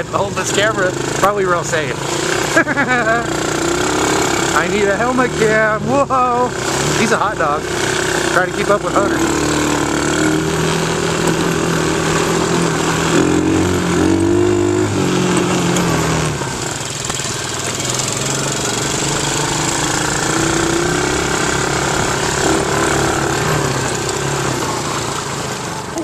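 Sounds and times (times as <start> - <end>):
small atv engines running: 0.0 - 26.0.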